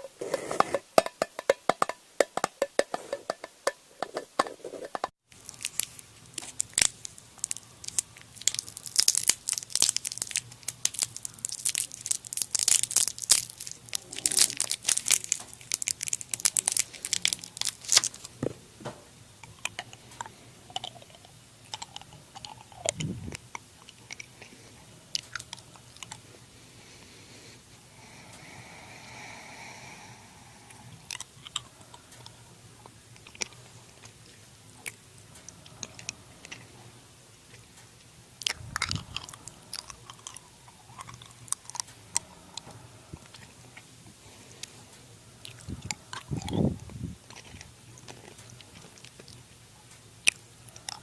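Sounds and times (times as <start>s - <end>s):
paper crumpling and crackling: 5.4s - 18.4s.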